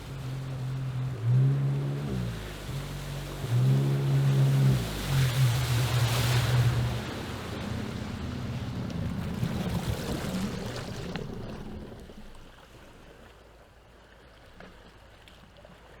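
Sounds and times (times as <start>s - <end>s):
jet ski engine running: 0.0s - 12.6s
faint water and wind noise: 0.0s - 16.0s.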